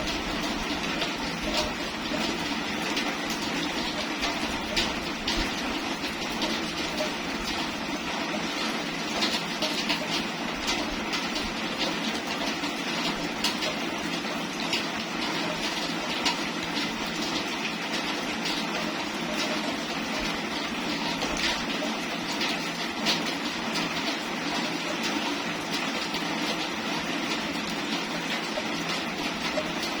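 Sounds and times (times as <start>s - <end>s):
steady rain falling: 0.0s - 30.0s.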